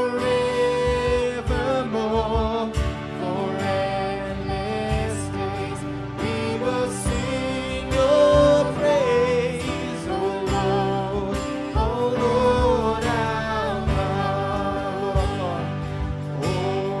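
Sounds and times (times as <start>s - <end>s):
band accompaniment: 0.0s - 17.0s
person singing: 0.0s - 17.0s
drum hits: 7.1s - 8.9s, 9.6s - 16.8s.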